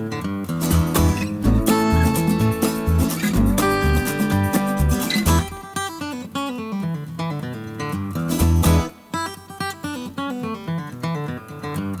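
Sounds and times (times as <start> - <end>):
quick plucked notes: 0.7 - 5.7
low bass note: 1.3 - 5.6.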